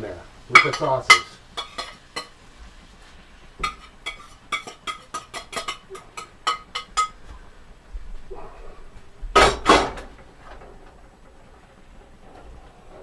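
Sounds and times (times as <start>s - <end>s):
metal utensil clinking against pan: 3.7s - 7.2s.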